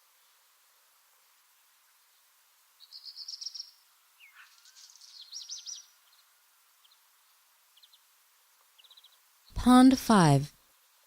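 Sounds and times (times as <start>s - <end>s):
songbirds singing: 2.1s - 9.6s
faint bird chirps: 2.8s - 7.1s, 8.7s - 9.3s.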